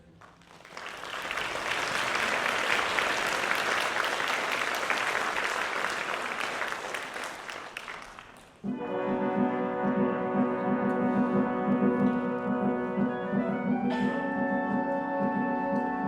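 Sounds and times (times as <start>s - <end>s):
audience applauding: 0.0s - 8.7s
orchestra playing sustained chords: 8.7s - 16.0s.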